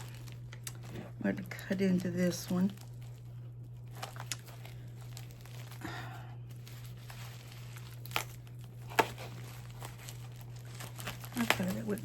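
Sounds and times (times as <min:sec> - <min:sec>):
packaging crinkling: 0:00.0 - 0:12.0
package being cut and torn: 0:06.9 - 0:12.0.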